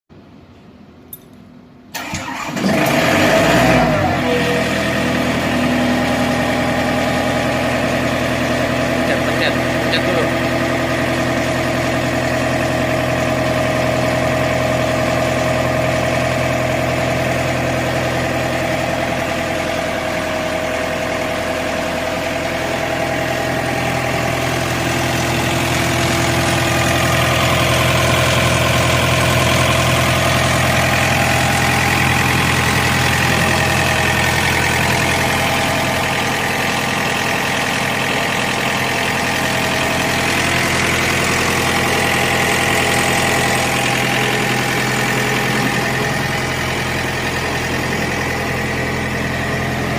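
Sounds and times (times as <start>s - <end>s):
air compressor humming: 29.6s - 49.9s.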